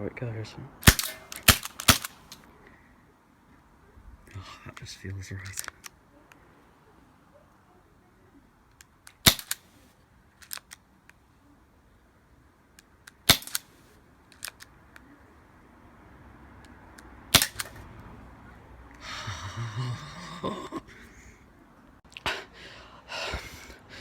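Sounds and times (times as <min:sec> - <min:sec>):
airsoft pistol shots: 0:00.8 - 0:02.4, 0:09.2 - 0:09.6, 0:13.3 - 0:13.7, 0:17.3 - 0:17.8.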